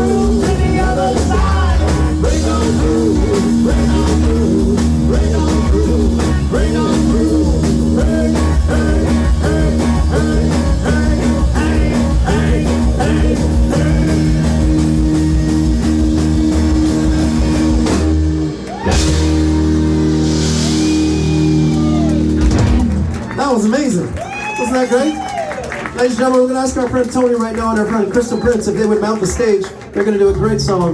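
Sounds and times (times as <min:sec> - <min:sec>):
live rock blues band: 0:00.0 - 0:23.4
guitar: 0:00.0 - 0:25.8.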